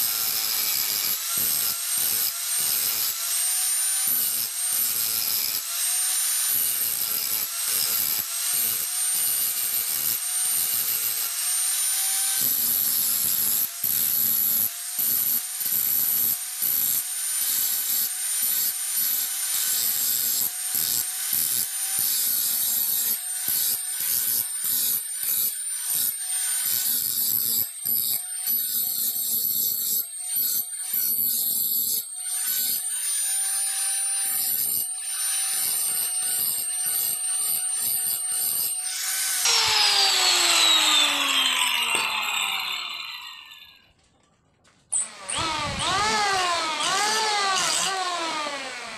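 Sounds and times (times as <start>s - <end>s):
electric grinder motor whine: 38.9s - 43.9s, 44.9s - 48.9s.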